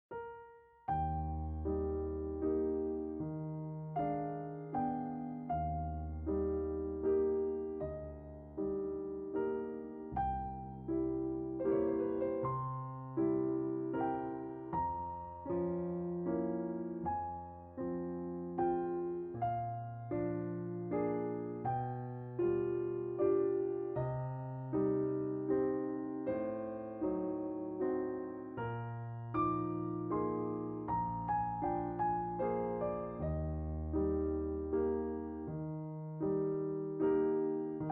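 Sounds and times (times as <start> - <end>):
electric piano chords: 0.1 - 37.9.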